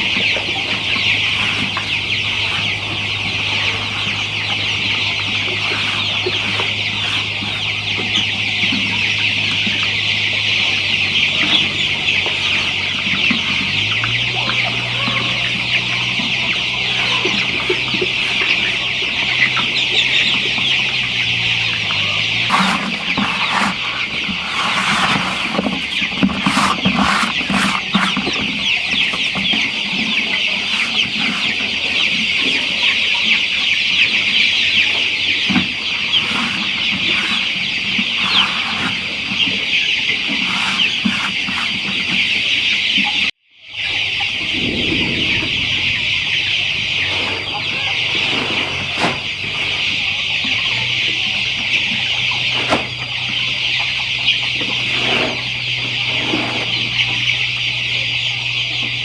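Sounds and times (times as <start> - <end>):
flock of chickens clucking: 0.0 - 59.0
steady low hum: 43.8 - 48.5.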